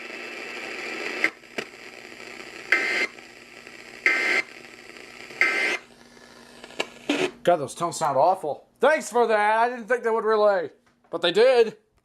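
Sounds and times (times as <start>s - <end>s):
radio hiss: 0.0s - 7.4s.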